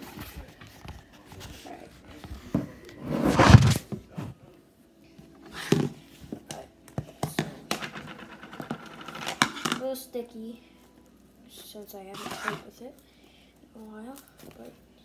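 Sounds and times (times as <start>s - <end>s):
rustling: 10.9s - 13.0s.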